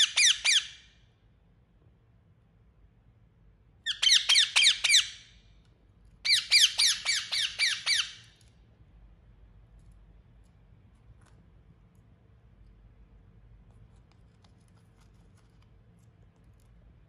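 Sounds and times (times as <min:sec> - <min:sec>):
parakeet squawking: 0:00.0 - 0:00.9, 0:03.8 - 0:05.3, 0:06.2 - 0:08.3.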